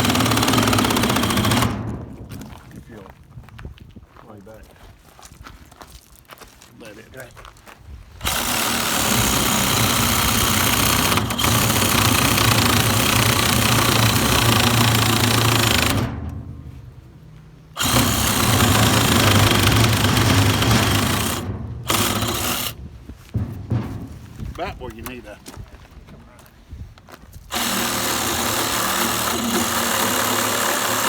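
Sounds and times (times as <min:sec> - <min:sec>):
electric power saw cutting wood: 0:00.0 - 0:02.0, 0:08.2 - 0:16.3, 0:17.8 - 0:22.8, 0:27.5 - 0:31.0.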